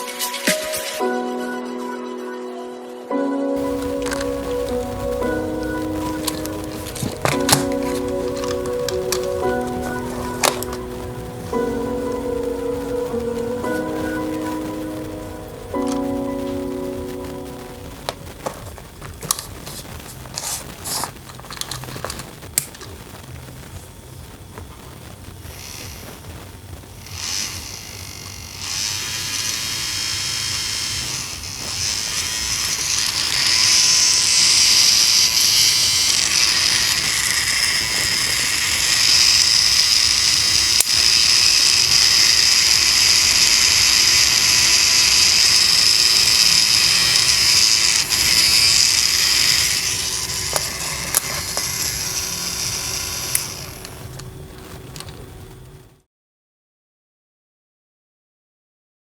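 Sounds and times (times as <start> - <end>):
small fan motor whirring: 25.4 - 55.7.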